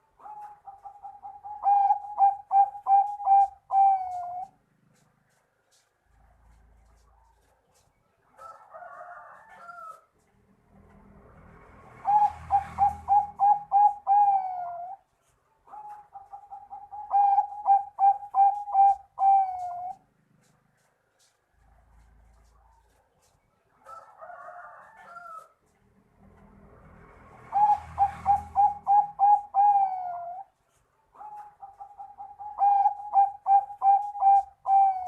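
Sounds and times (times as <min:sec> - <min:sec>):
dove cooing: 0:00.0 - 0:05.0, 0:12.0 - 0:15.1, 0:15.7 - 0:20.1, 0:27.4 - 0:30.5, 0:31.2 - 0:35.0.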